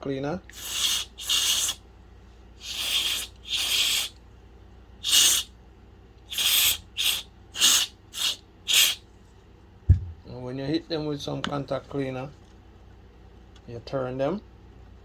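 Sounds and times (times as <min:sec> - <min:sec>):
aerosol spray hissing: 0:00.5 - 0:01.8, 0:02.6 - 0:04.1, 0:05.0 - 0:05.5, 0:06.3 - 0:09.0.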